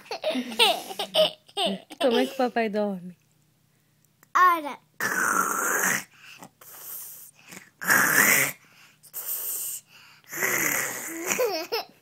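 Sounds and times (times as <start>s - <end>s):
toddler imitating snoring: 5.0s - 8.6s, 9.2s - 11.7s.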